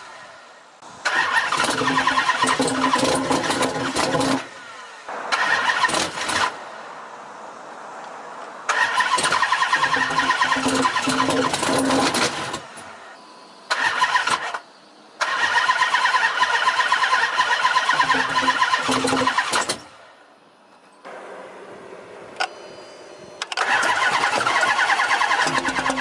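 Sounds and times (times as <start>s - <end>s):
car engine cranking: 1.0s - 6.6s, 8.6s - 13.0s, 13.6s - 20.0s, 22.4s - 26.0s.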